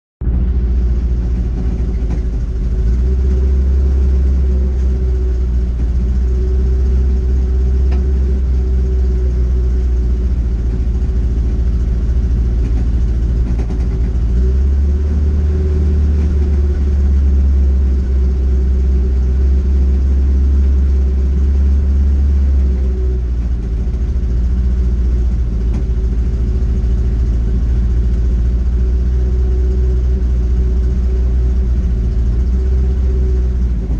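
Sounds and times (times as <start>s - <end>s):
car engine idling: 0.2s - 33.9s.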